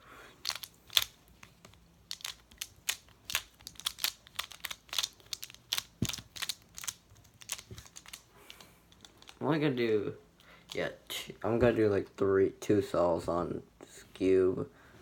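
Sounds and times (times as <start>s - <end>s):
plastic puzzle clicking: 0.4s - 9.4s.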